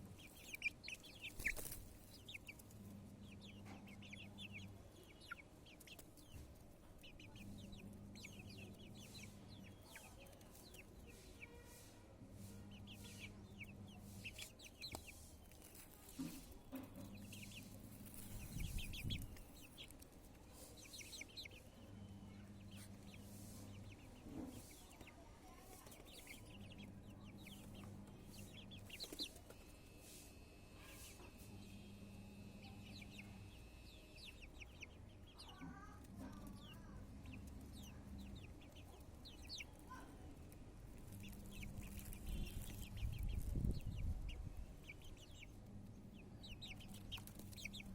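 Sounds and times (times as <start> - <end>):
chickens clucking: 0.0 - 47.9
chicks cheeping: 0.0 - 47.9
faint low hum: 0.0 - 47.9.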